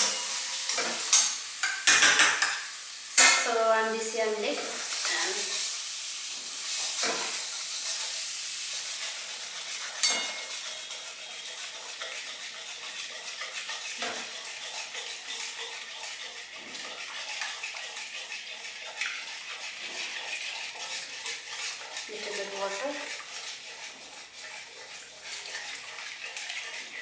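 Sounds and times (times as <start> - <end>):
spoon scraping and clicking on pan: 0.0 - 3.5, 6.7 - 27.0
masala sizzling in a pan: 0.0 - 27.0
spoon knocking on pan: 0.8 - 2.6.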